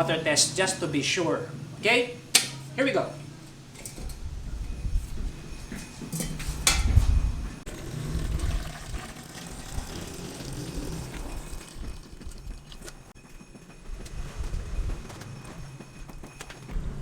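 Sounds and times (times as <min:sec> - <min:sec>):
water pouring into steel tank: 0:07.8 - 0:13.1.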